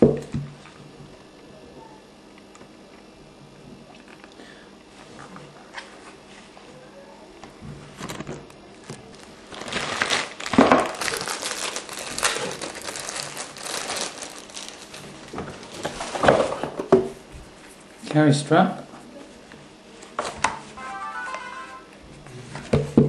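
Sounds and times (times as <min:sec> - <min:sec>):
packaging crinkling and rustling: 0:08.0 - 0:16.6.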